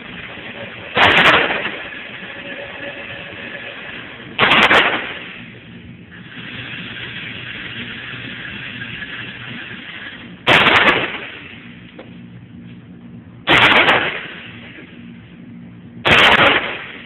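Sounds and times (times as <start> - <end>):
loud gunshot with echo: 1.0 - 1.8, 4.4 - 5.3, 10.4 - 11.5, 13.5 - 14.7, 16.0 - 17.0.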